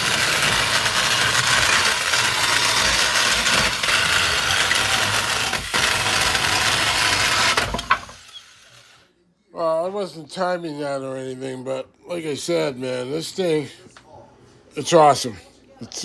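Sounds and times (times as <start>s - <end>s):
chainsaw cutting wood: 0.0s - 8.9s.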